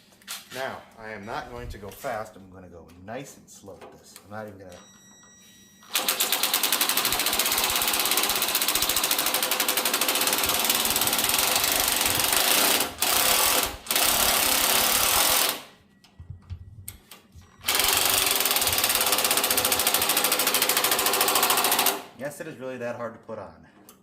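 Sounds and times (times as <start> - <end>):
power tool pulsing rattle: 5.9 - 15.7, 17.6 - 22.1.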